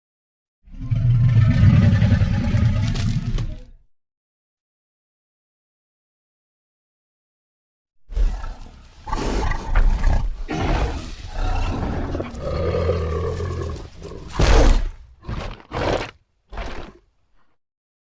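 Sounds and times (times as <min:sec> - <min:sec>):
dinosaur growls and roar: 0:00.7 - 0:03.8, 0:08.1 - 0:17.1.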